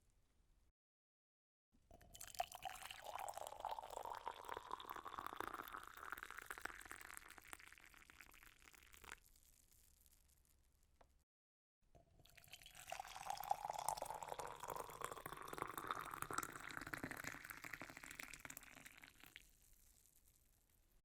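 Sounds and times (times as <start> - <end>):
coffee pouring into a cup: 2.1 - 9.2, 12.2 - 19.6.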